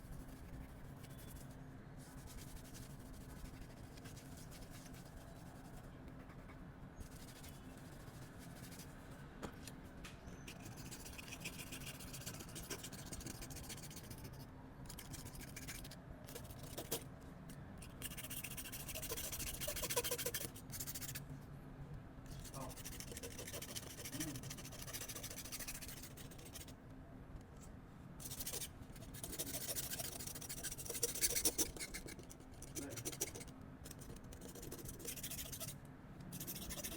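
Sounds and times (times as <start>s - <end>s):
faint steady hum: 0.0s - 36.9s.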